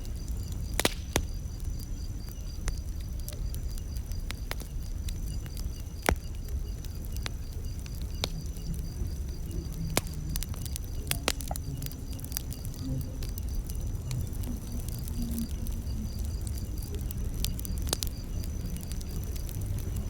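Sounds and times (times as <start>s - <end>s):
campfire wood crackling: 0.0s - 20.0s.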